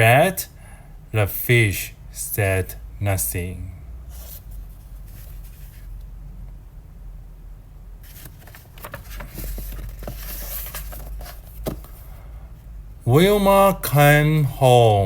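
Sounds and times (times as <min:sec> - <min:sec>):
low steady hum: 0:00.0 - 0:15.0
paper page rustling: 0:04.1 - 0:05.9, 0:08.0 - 0:12.1.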